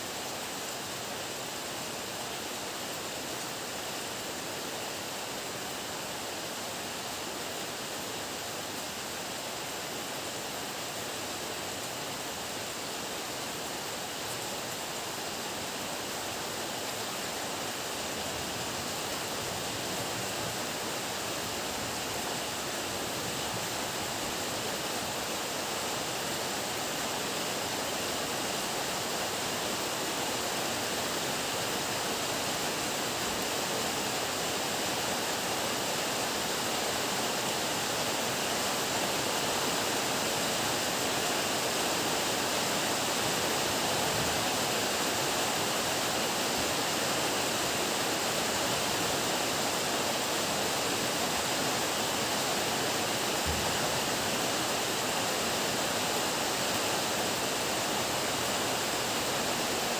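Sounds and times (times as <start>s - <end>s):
heavy rain pouring: 39.1s - 59.5s.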